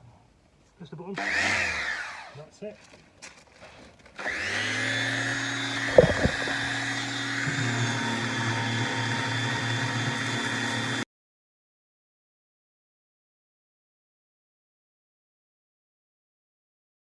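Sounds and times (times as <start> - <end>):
sharp knocks: 5.9 - 6.7.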